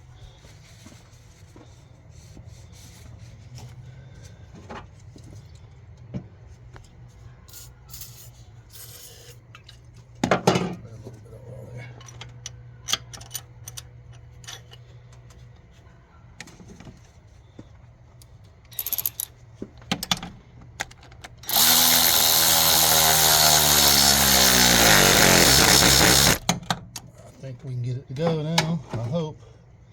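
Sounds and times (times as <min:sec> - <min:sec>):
power tool running: 0:21.5 - 0:26.4.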